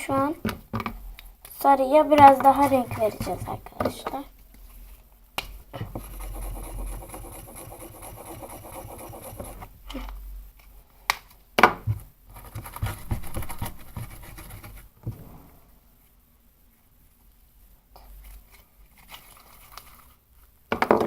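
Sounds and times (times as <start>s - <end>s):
slime rubbing and scraping: 1.7s - 4.2s, 5.8s - 9.7s.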